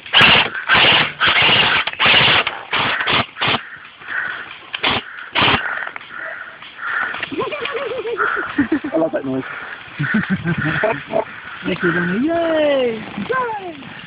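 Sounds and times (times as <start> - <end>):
airsoft gun bursts: 0.1 - 3.6, 4.8 - 5.7.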